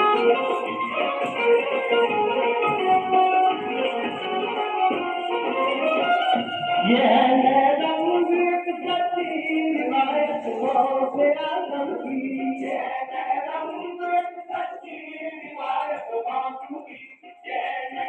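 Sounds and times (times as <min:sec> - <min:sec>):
choir-like group singing: 0:09.6 - 0:18.0.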